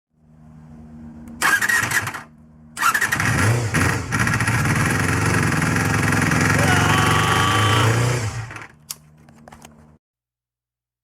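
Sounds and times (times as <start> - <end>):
starter motor whirring: 1.4 - 8.8
motorcycle engine running: 1.5 - 8.8.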